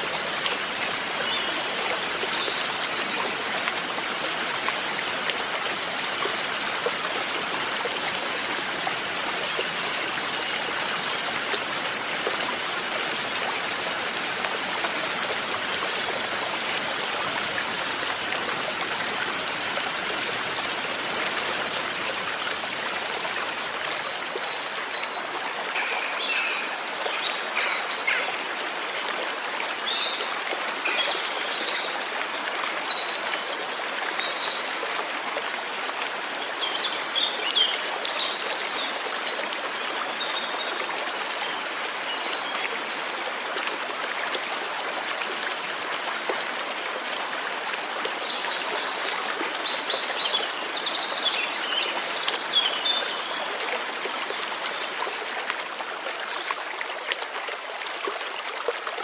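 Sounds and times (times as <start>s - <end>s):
birds chirping: 23.9s - 28.9s.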